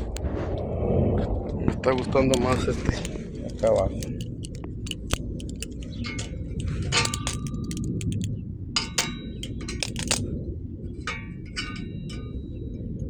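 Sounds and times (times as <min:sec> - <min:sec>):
metallic clinks and clangs: 0:02.3 - 0:10.3.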